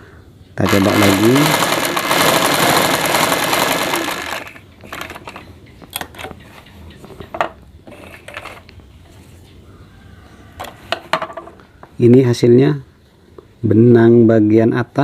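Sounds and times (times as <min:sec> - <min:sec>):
sewing machine running: 0:00.6 - 0:05.2.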